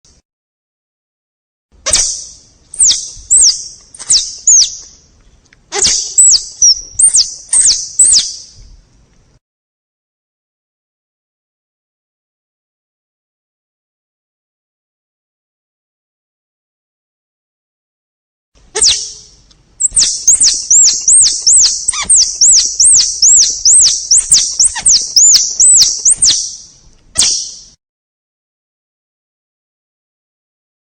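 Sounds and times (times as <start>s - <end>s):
squirrel chirping: 1.9s - 4.9s, 5.7s - 8.6s, 18.8s - 27.8s.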